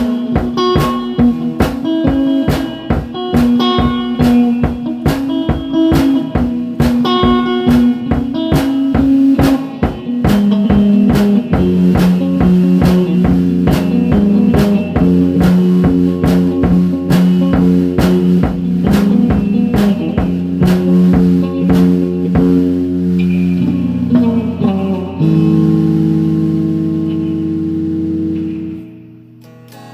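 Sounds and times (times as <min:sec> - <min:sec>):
steady drum beat: 0:00.0 - 0:27.1
rock music guitar: 0:00.0 - 0:29.9.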